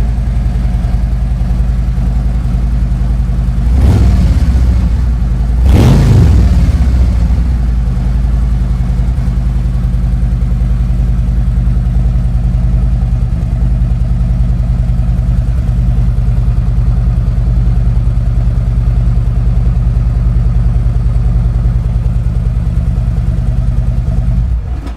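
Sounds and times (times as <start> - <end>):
motorcycle engine idling: 0.0 - 24.9.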